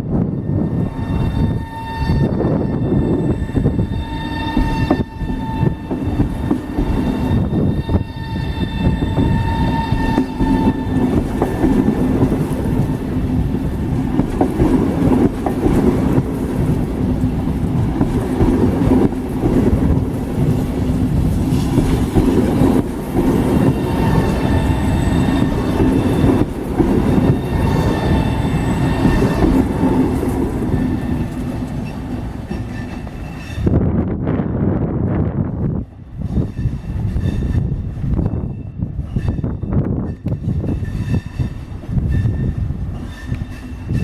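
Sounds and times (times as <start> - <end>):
train humming tone: 0.0 - 44.0
train wheels rumbling on rail: 0.0 - 44.0.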